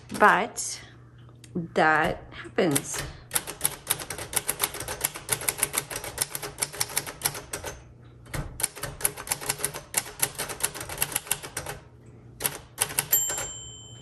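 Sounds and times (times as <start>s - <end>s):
manual typewriter typing: 2.7s - 11.8s, 12.4s - 13.6s.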